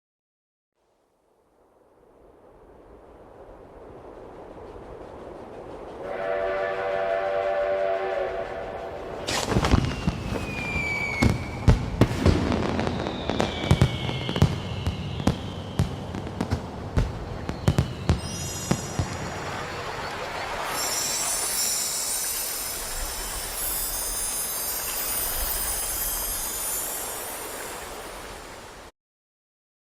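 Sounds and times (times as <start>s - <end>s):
rushing sound: 2.0s - 28.8s
steam train whistle: 6.0s - 11.7s, 20.6s - 27.4s
whistling rockets: 6.0s - 28.6s
fireworks bangs and crackles: 9.2s - 28.4s.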